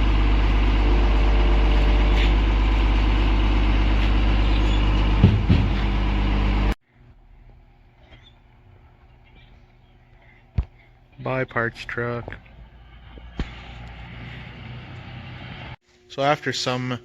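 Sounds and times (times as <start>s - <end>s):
heavy vehicle engine running: 0.0s - 6.8s, 11.5s - 15.8s.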